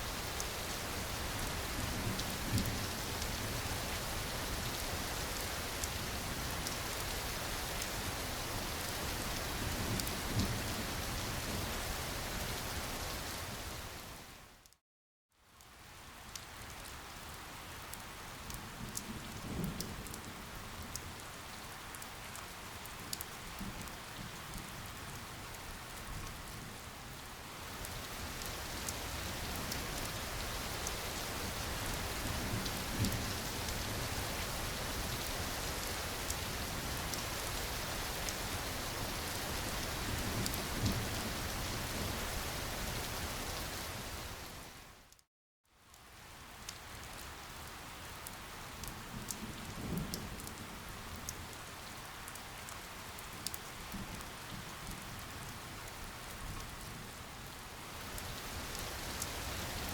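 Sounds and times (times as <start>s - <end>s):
rain falling: 0.0s - 14.8s, 15.6s - 45.2s, 45.8s - 59.9s.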